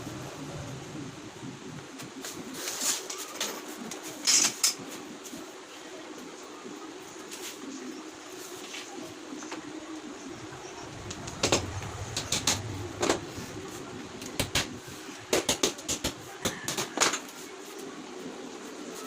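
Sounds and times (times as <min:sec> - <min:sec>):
brief low hum: 0:09.6 - 0:15.2.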